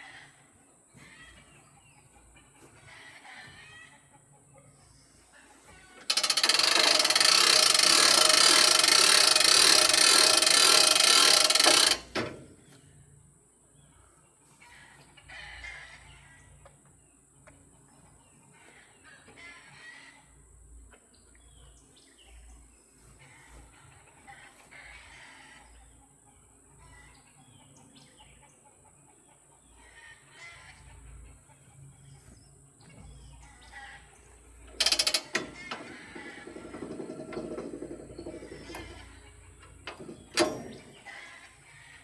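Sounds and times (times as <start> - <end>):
chickens clucking: 0.0 - 12.8, 22.2 - 42.0.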